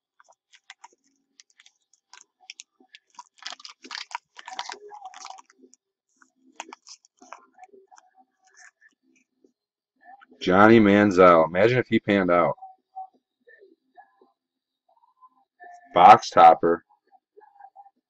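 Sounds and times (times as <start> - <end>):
plastic packaging crinkling: 0.0 - 5.7, 6.6 - 7.4.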